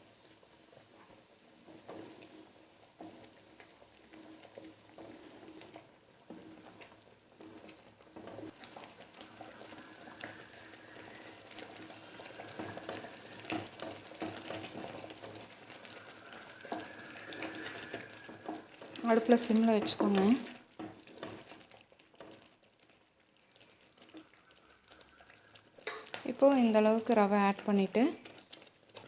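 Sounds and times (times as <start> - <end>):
water boiling in a pan: 0.0 - 29.0.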